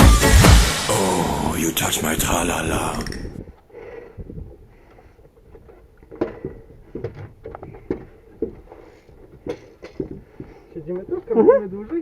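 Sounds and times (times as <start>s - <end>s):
light handling knocks and rustles: 4.9s - 12.0s.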